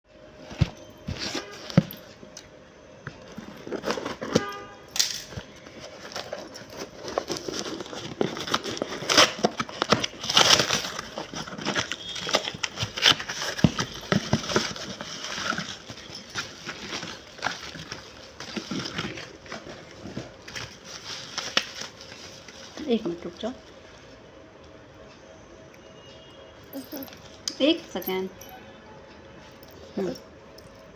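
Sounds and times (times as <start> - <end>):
packaging crinkling and rustling: 0.4 - 2.3, 3.1 - 23.6.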